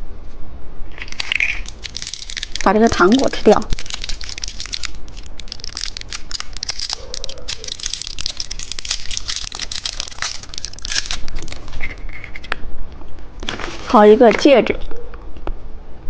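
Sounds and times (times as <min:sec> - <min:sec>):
crunchy chewing: 0:00.9 - 0:12.5
candy wrapper crackling: 0:00.9 - 0:12.6.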